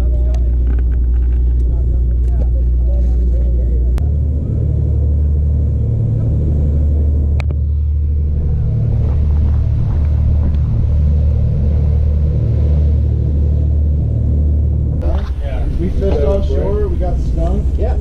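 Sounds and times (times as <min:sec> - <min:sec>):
boat engine droning: 0:00.0 - 0:18.0.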